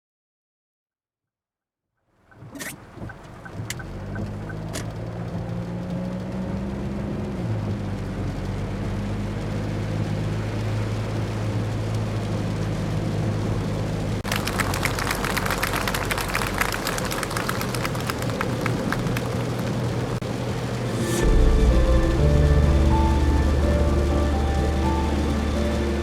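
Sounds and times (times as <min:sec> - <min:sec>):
road noise: 0:02.3 - 0:26.0
car engine running: 0:02.4 - 0:14.2, 0:17.2 - 0:26.0.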